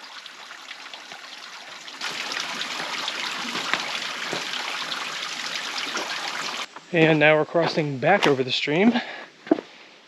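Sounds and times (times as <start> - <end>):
water trickling over rocks: 0.0 - 6.8.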